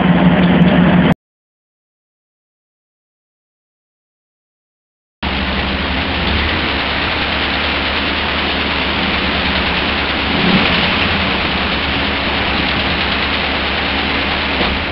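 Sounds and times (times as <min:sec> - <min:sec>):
car engine rumble: 0:05.2 - 0:14.9.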